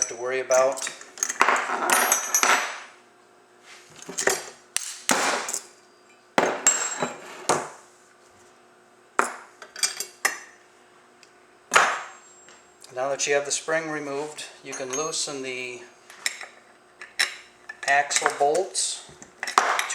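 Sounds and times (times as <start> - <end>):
metal tools clinking on workbench: 0.0 - 2.9, 6.4 - 7.2, 14.7 - 15.4, 19.4 - 19.9.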